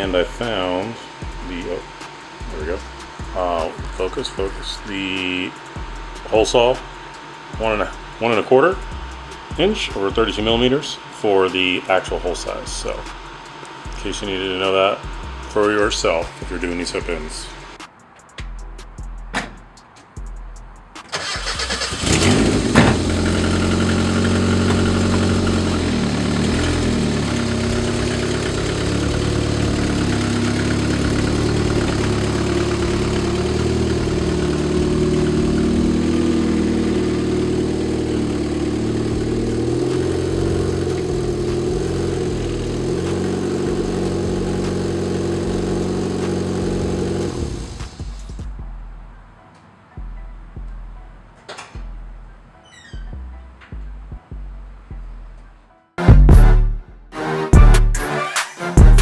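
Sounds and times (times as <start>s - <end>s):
car engine starting and idling: 0.0s - 10.8s, 20.9s - 48.5s.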